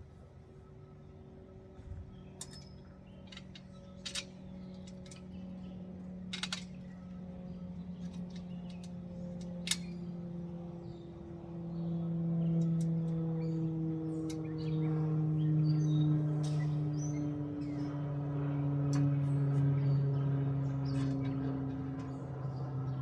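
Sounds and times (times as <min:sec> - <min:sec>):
steady low hum: 0:00.0 - 0:23.0
metal parts clicking and clinking: 0:02.4 - 0:05.3, 0:06.3 - 0:06.8.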